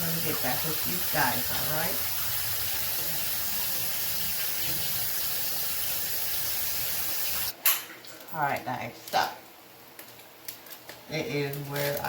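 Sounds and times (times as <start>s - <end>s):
meat sizzling in a hot pan: 0.0s - 7.6s.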